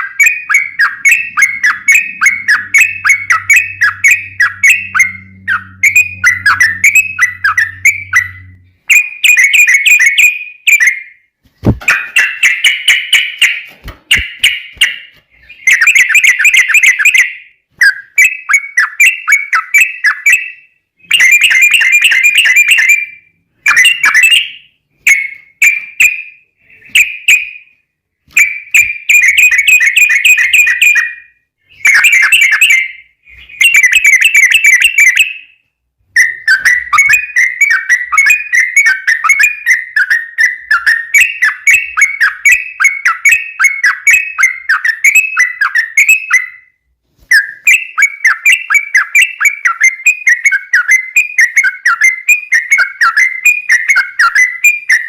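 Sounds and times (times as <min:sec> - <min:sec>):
bird singing bubbly chattering notes: 0:00.0 - 0:10.3.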